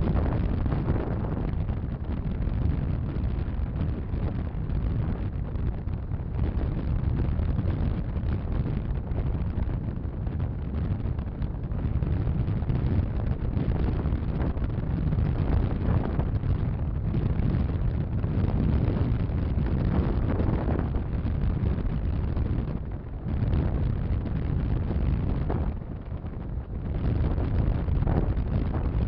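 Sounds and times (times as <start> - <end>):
wind buffeting microphone: 0.0 - 29.0.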